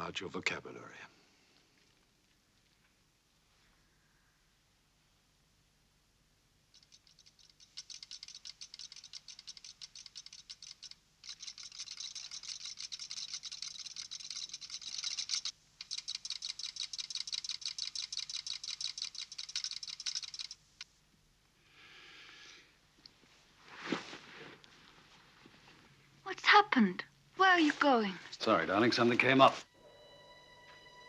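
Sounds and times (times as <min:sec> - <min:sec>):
ticker-tape printer clicking: 0:06.8 - 0:20.9.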